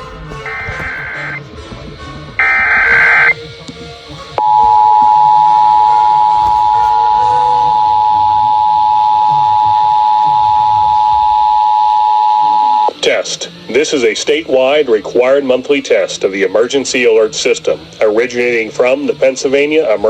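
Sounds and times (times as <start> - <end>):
emergency alert two-tone signal: 0.4 - 1.4, 2.4 - 3.4, 4.4 - 13.0.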